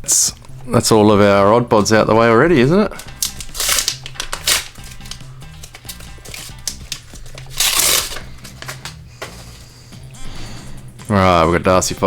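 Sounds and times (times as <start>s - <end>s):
background music with bass line: 0.0s - 12.0s
foil wrapper crinkling and tearing: 3.0s - 9.6s.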